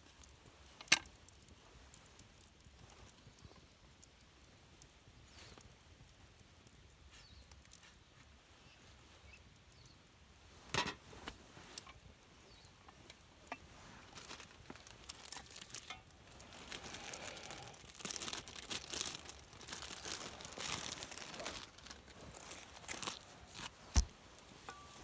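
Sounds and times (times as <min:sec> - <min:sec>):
crinkling and rustling: 0:10.5 - 0:25.0.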